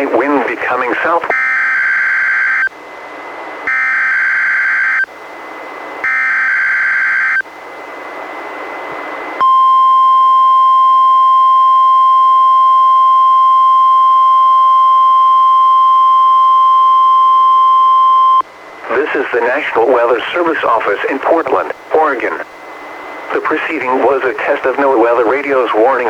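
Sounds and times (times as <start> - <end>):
radio hiss: 0.0 - 1.3, 18.4 - 26.0
steady warning alarm tone: 0.0 - 3.0, 3.6 - 26.0.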